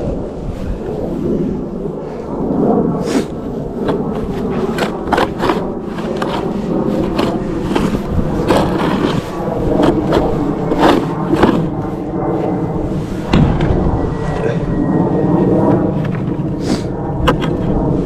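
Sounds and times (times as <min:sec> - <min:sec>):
tool scraping snow: 0:02.9 - 0:13.3, 0:15.4 - 0:18.0.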